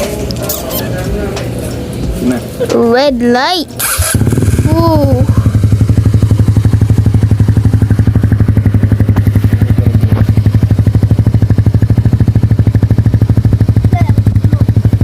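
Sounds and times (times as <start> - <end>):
scooter engine idling: 3.8 - 15.0.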